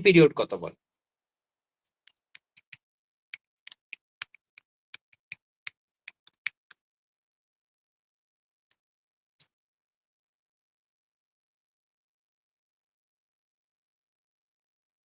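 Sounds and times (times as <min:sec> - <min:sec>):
computer keyboard typing: 0:02.1 - 0:02.8, 0:03.4 - 0:06.8.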